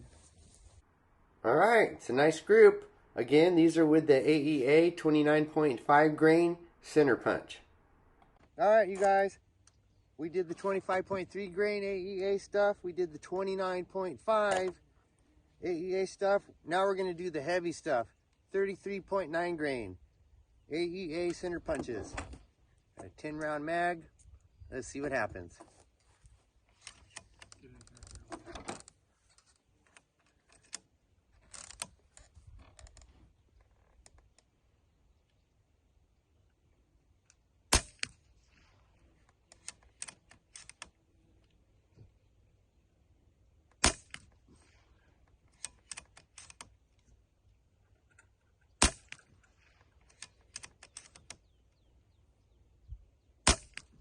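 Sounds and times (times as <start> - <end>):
air rifle shots: 37.7 - 38.1, 43.8 - 44.3, 53.4 - 54.0
rifle handling clicks: 39.2 - 41.6, 45.3 - 47.0, 48.0 - 51.5.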